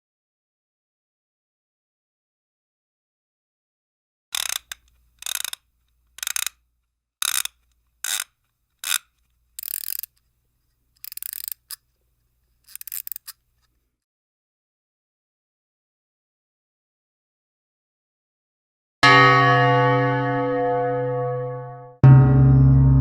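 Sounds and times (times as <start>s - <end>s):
mechanical clicks and scrapes: 4.3s - 6.6s, 7.2s - 13.9s.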